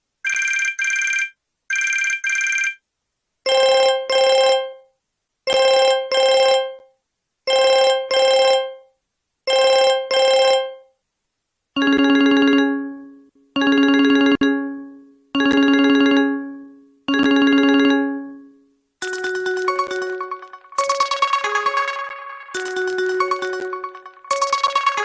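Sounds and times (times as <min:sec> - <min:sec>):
phone ringtone double rings: 0:00.2 - 0:02.8, 0:11.8 - 0:25.0
lower-pitched phone ringtone: 0:11.8 - 0:25.0
high trilling phone ring: 0:19.0 - 0:25.0.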